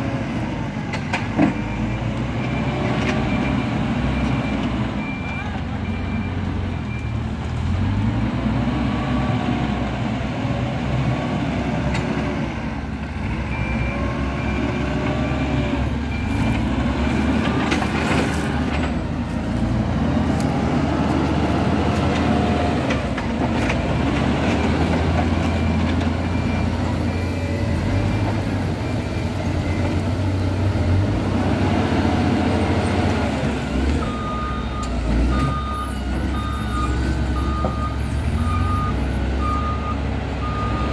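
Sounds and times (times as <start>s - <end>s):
heavy machine diesel engines: 0.0s - 40.9s
reversing alarm beeping: 34.0s - 40.9s.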